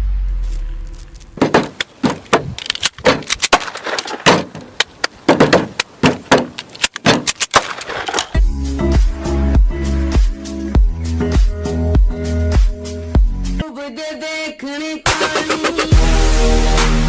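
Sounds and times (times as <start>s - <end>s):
irregular knocks and clicks: 1.4s - 8.3s.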